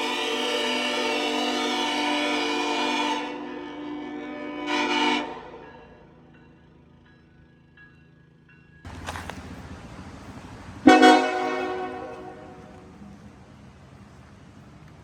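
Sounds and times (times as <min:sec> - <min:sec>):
train horn chord: 0:00.0 - 0:05.7, 0:10.8 - 0:13.0.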